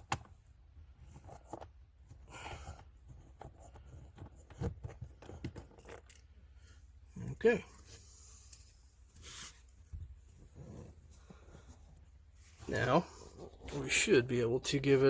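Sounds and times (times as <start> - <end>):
rustling: 7.6 - 14.2.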